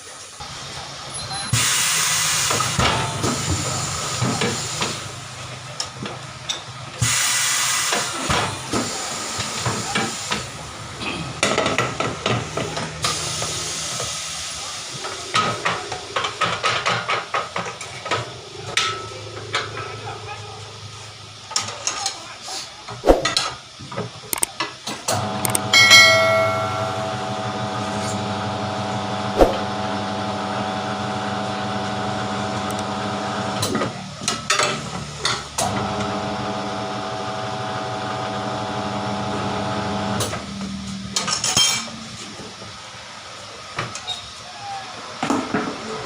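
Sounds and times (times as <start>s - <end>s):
tyre changer motor hum: 25.1s - 41.1s.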